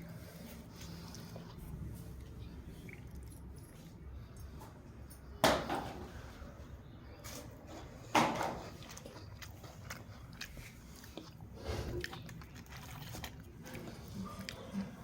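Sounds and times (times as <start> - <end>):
chewing with small crunches: 0.0 - 5.3, 7.3 - 15.0
biscuit crunching: 8.4 - 15.0.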